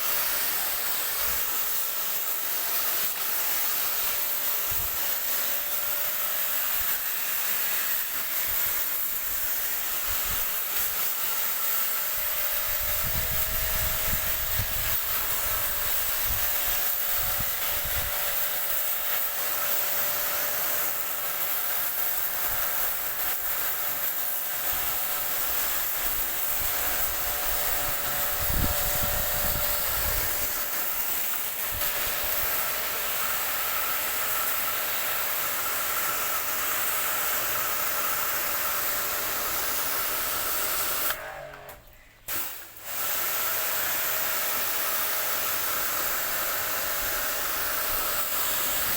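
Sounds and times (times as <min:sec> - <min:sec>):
water jet spraying: 0:24.6 - 0:33.1.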